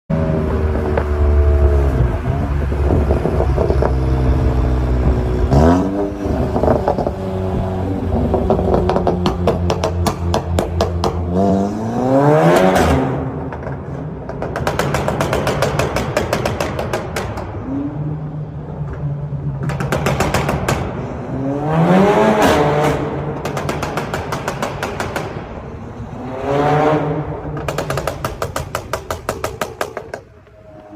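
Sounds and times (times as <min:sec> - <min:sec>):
car engine revving: 0:00.1 - 0:15.2, 0:19.6 - 0:24.4, 0:25.0 - 0:28.6
exhaust crackling and popping: 0:00.5 - 0:11.3.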